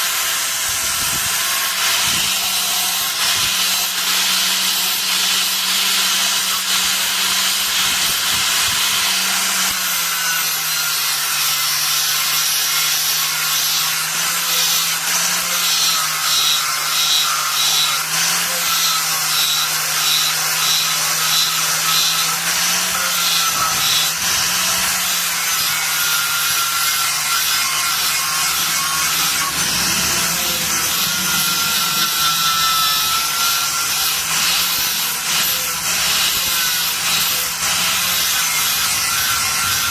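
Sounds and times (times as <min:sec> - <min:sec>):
power tool hissing on metal: 0:00.0 - 0:39.9
low motor hum: 0:27.8 - 0:33.7.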